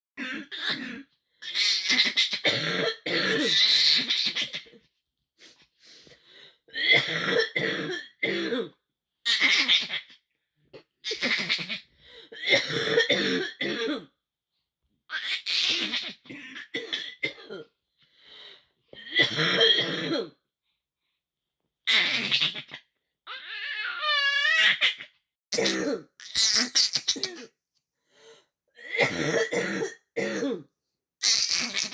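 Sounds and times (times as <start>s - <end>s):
person coughing: 2.4s - 3.6s, 12.4s - 14.1s, 19.0s - 20.4s, 25.6s - 27.4s, 28.9s - 30.7s
person clearing throat: 2.5s - 3.6s, 19.0s - 20.4s, 25.6s - 27.4s, 28.9s - 30.7s.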